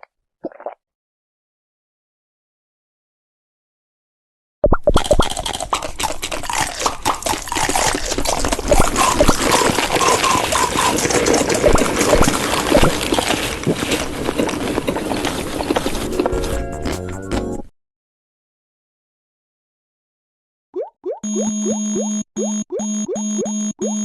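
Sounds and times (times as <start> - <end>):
wet chewing and slurping: 0.4 - 0.8, 4.8 - 16.4.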